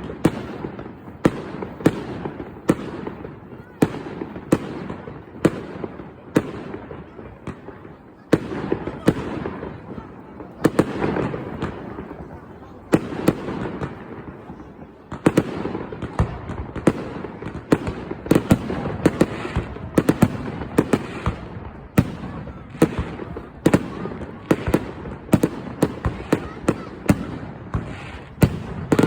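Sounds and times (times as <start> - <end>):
fireworks bangs and crackles: 0.0 - 29.0.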